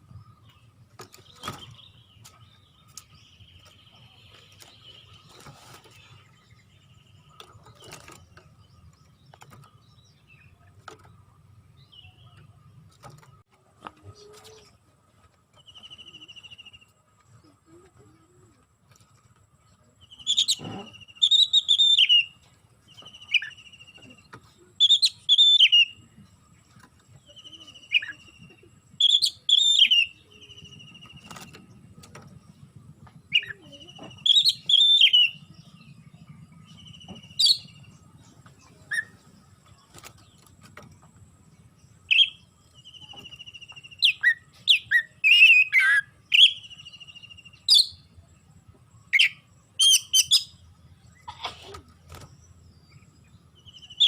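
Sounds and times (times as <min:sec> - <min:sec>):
bird singing whistles and trills: 0:20.1 - 0:24.0, 0:24.8 - 0:26.1, 0:27.4 - 0:31.5, 0:33.2 - 0:38.0, 0:38.8 - 0:39.2, 0:42.0 - 0:48.1, 0:49.1 - 0:50.7, 0:52.9 - 0:54.0.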